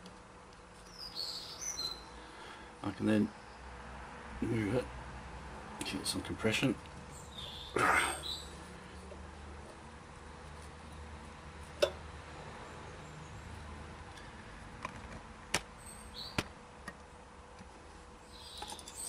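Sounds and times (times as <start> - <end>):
metal chain and tools clicking: 18.5 - 19.0.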